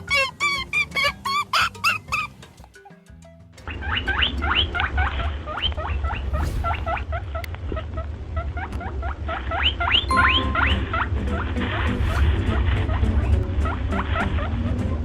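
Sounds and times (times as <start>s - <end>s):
chicks peeping: 0.0s - 2.4s
steady low rumble: 4.4s - 15.0s.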